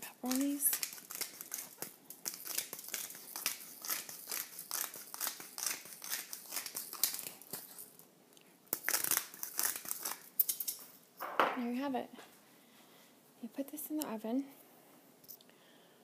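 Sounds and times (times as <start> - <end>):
pepper mill grinding: 0.0 - 8.0, 8.7 - 10.9.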